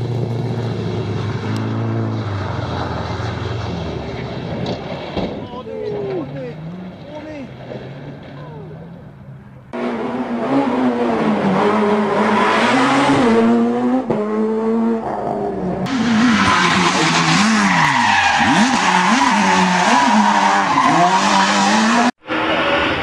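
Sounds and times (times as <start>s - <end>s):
tyre and road noise: 0.0s - 23.0s
rally car engine revving: 6.0s - 23.0s.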